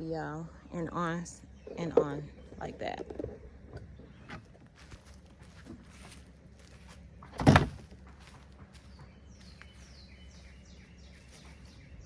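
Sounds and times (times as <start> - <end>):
loud thump: 7.4 - 7.8
bird singing downward notes: 8.9 - 12.0.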